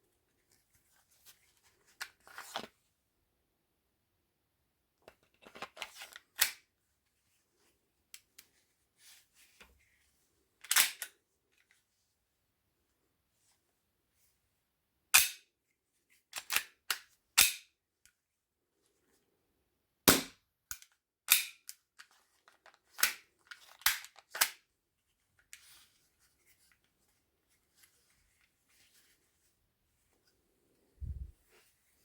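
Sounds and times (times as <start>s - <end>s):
gun mechanism clicks and snaps: 10.7s - 11.1s, 16.4s - 17.6s, 20.7s - 21.8s, 23.0s - 24.6s.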